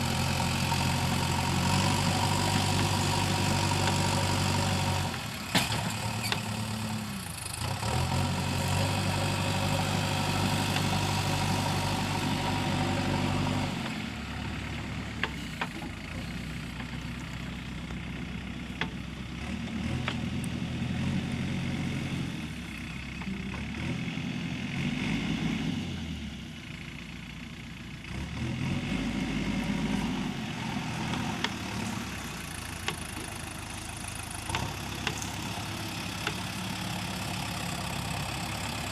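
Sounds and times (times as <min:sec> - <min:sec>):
backhoe diesel engine running: 0:00.0 - 0:38.9.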